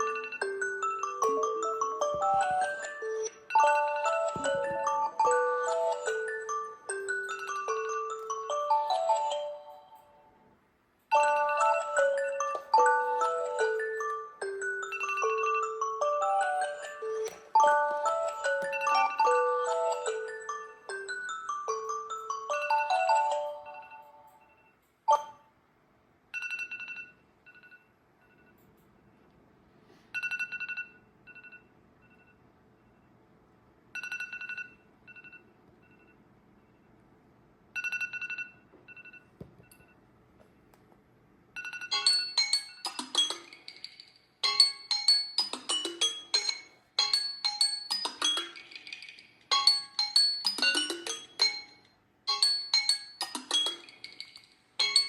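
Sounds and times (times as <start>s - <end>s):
marimba-like alarm ringtone: 0.0s - 10.2s, 11.1s - 25.4s, 41.6s - 55.0s.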